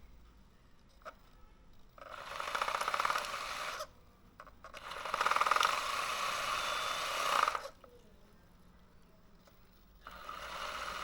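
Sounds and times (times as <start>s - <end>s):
small electric motor whirring: 2.0s - 3.9s, 4.8s - 7.7s, 10.0s - 11.0s.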